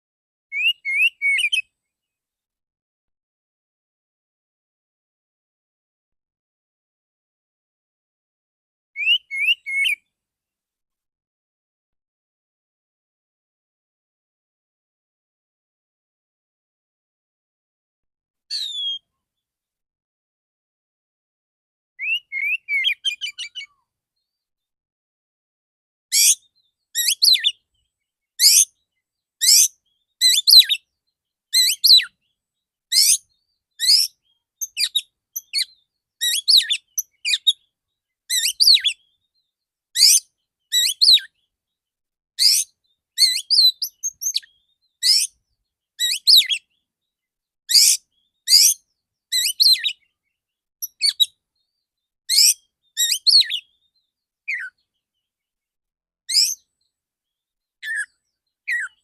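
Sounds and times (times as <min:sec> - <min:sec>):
magpie-robin singing sharp phrases: 0:00.5 - 0:01.7, 0:09.0 - 0:10.0, 0:18.5 - 0:19.2, 0:22.0 - 0:24.4, 0:26.1 - 0:41.5, 0:42.4 - 0:47.1, 0:47.7 - 0:55.2, 0:56.3 - 0:59.0.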